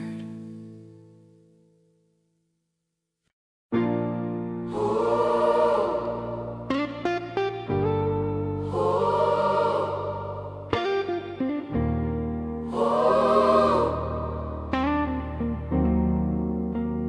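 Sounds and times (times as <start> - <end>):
plucked guitar notes: 0.0 - 1.3, 3.8 - 5.2, 5.8 - 17.0
sustained chords over bass line: 3.9 - 17.0
wordless choir-like vocals: 4.6 - 15.7.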